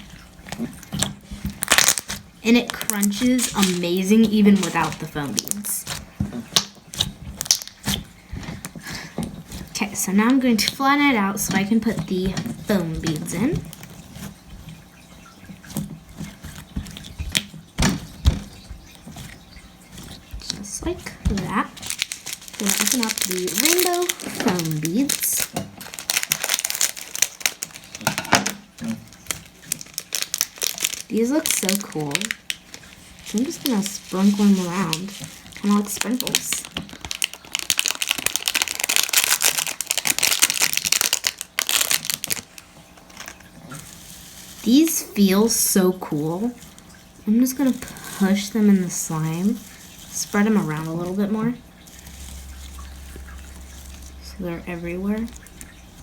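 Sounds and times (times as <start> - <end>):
plastic packet crinkling: 0.0 - 15.0, 15.6 - 56.0
slime clicking and popping: 6.6 - 8.0.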